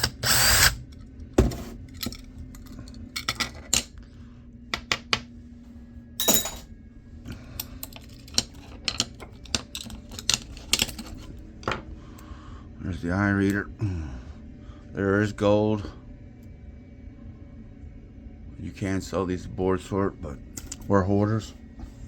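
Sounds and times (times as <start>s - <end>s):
small metal parts clinking: 1.9s - 3.9s, 6.2s - 6.7s, 7.3s - 11.8s, 20.6s - 20.9s.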